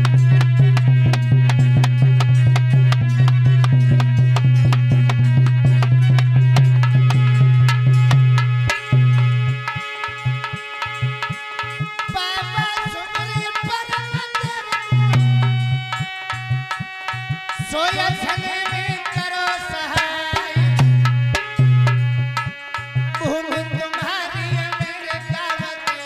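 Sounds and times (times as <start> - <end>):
fast hand-drum strokes: 0.0 - 19.6
ornamented melodic line: 0.0 - 25.8.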